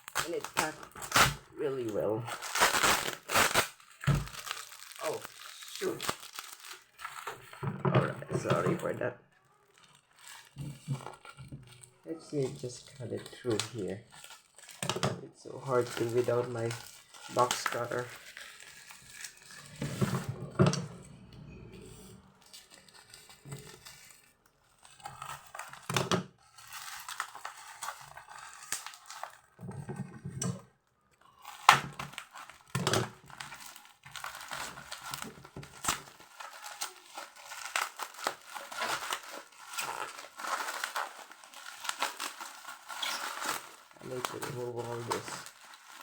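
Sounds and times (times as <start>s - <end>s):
packaging snapping: 0.0s - 7.6s, 9.7s - 19.9s, 31.3s - 46.0s
packaging crinkling and tearing: 0.0s - 21.5s, 22.2s - 46.0s.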